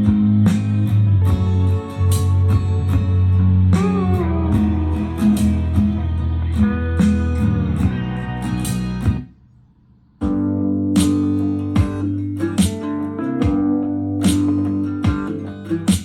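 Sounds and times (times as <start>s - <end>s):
guitar music with heavy bass: 0.0s - 9.4s, 10.2s - 16.0s.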